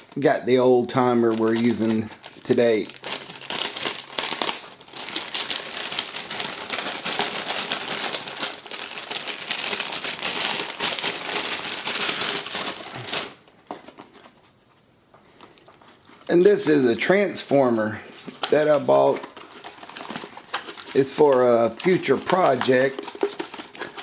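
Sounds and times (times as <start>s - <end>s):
packaging crinkling: 0.0s - 14.6s, 15.3s - 24.0s.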